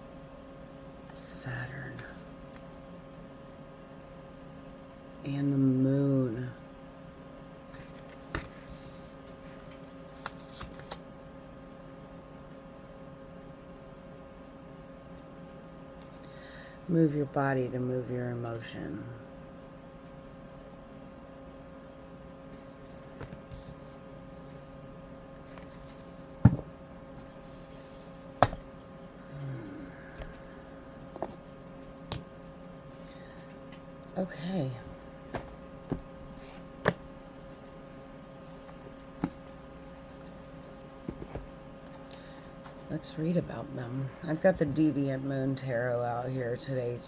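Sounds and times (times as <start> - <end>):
faint steady hum: 0.0 - 47.0
cards sliding rustle: 7.7 - 11.0, 25.4 - 26.5, 35.3 - 37.6
card tapping: 28.4 - 28.8, 35.3 - 36.2.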